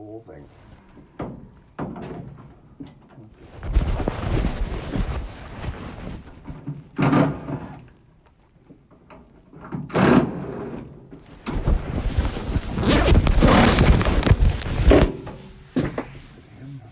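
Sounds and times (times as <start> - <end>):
scraping and rattling: 3.2 - 7.4, 11.2 - 16.1.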